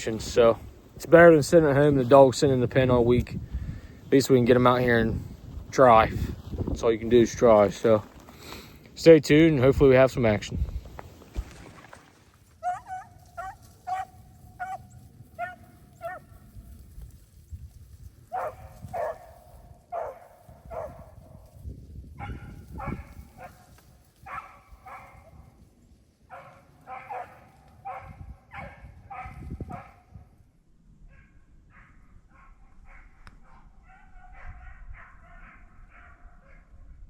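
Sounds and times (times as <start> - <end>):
wind rumbling on microphone: 0.0 - 37.0
dogs barking: 12.6 - 16.4, 18.3 - 21.3, 22.2 - 25.5, 26.3 - 30.1, 31.1 - 36.7.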